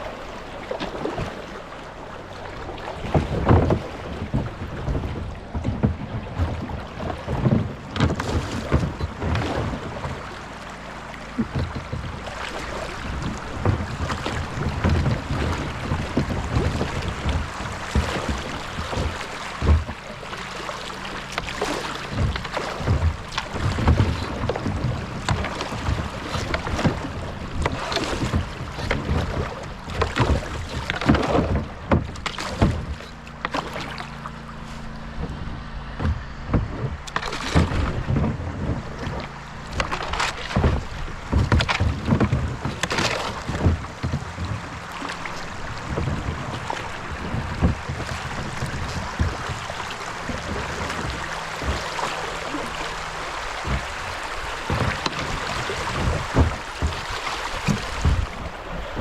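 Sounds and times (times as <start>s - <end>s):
paddle splashes and knocks: 0.0s - 59.0s
running water: 0.0s - 59.0s.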